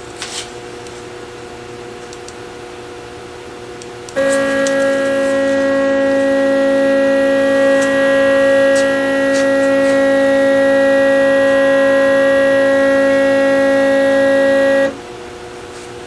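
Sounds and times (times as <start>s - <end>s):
router motors whining: 4.1s - 15.0s.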